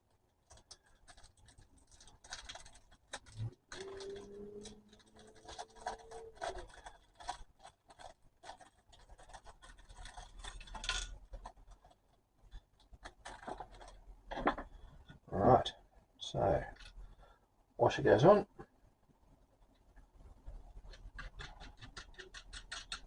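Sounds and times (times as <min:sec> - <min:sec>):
faint steady hum: 0:00.0 - 0:23.0
clock parts scratching and rubbing: 0:20.8 - 0:23.0.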